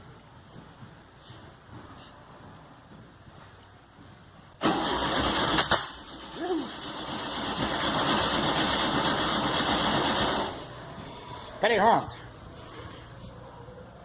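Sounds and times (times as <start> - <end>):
car engine cranking on starter: 4.6 - 10.6.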